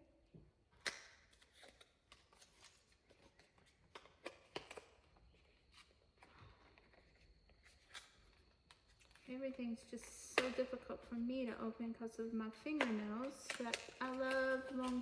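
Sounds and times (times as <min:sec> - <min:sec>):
fingernails clicking on packaging: 0:12.7 - 0:15.0.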